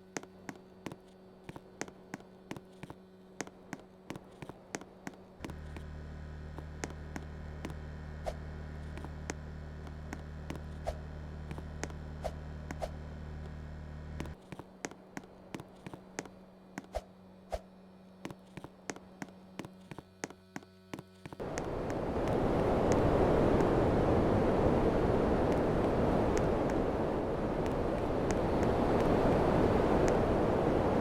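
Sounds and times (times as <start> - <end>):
air conditioner humming: 21.4 - 31.0.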